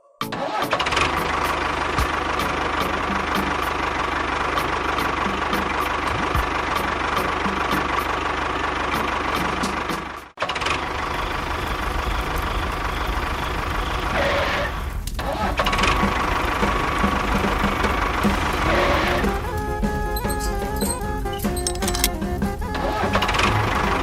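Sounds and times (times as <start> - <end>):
faint regular ticking: 20.2 - 22.2.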